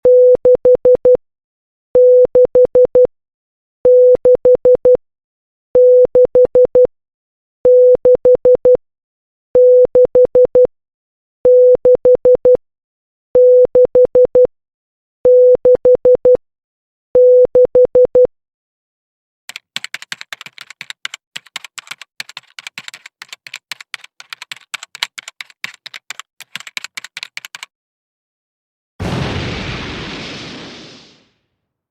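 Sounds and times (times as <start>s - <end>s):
morse code beeps: 0.0s - 1.2s
rapid irregular clicking: 19.5s - 27.7s.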